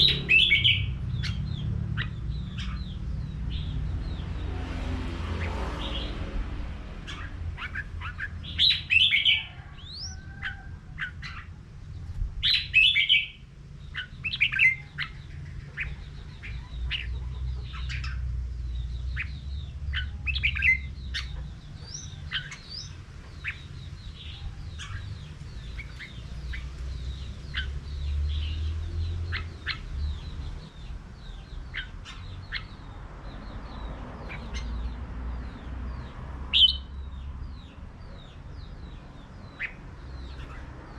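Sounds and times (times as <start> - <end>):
bulbuls singing: 0.0 - 40.9.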